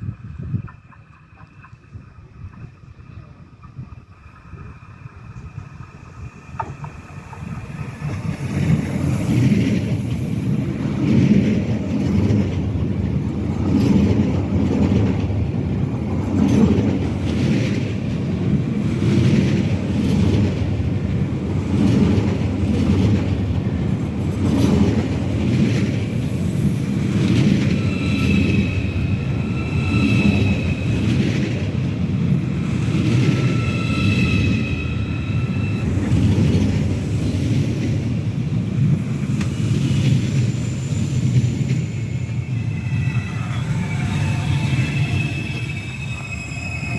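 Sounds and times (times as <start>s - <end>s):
train wheels rumbling on rails: 0.0s - 46.9s
high metallic wheel squeal: 26.3s - 31.6s, 32.7s - 36.6s, 40.5s - 46.9s.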